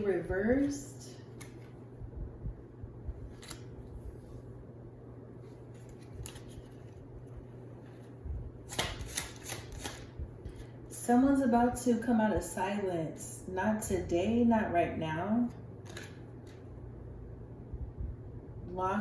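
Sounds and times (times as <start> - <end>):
steady low hum: 0.0 - 19.0
cards rustling and tapping: 0.6 - 1.8, 5.6 - 7.0, 7.8 - 10.7, 15.8 - 16.7.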